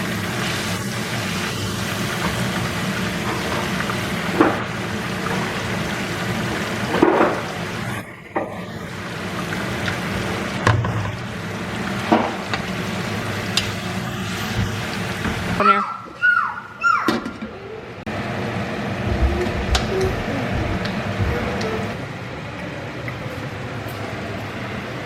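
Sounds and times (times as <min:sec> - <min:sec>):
chicken sizzling in oil: 0:00.0 - 0:15.6.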